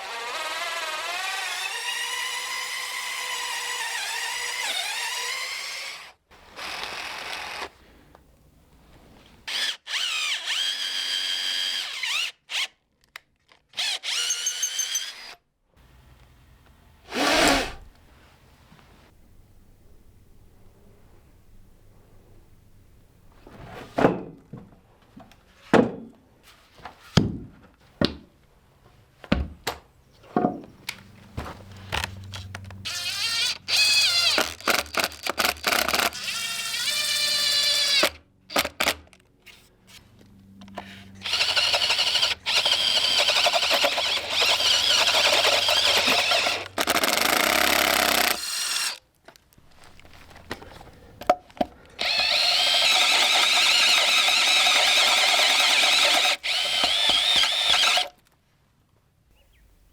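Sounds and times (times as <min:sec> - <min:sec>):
electric drill boring into wood: 0:00.0 - 0:07.7, 0:09.5 - 0:12.7, 0:13.8 - 0:15.4, 0:17.1 - 0:17.9, 0:32.9 - 0:39.0, 0:41.2 - 0:49.0, 0:52.0 - 0:58.1.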